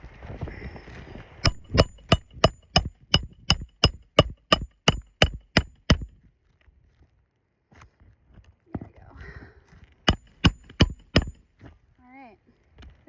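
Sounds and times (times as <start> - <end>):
hammer striking nail: 1.4 - 6.1, 10.1 - 11.4.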